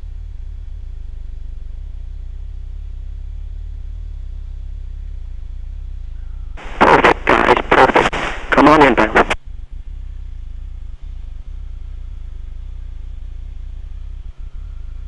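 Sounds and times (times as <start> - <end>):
radio voice: 6.6 - 9.4.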